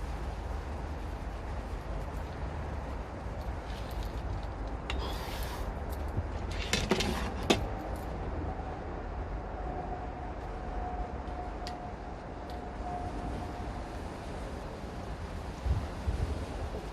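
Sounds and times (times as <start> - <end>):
wind rumble on microphone: 0.0 - 4.9, 5.7 - 16.9
rustle of handling: 0.0 - 8.2.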